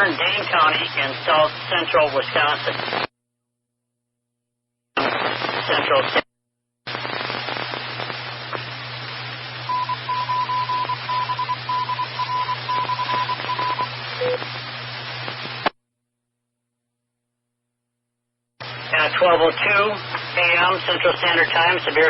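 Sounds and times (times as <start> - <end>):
radio static hiss and hum: 0.0 - 3.1, 5.0 - 6.3, 6.9 - 15.8, 18.6 - 22.0
morse code beeps: 9.7 - 14.4.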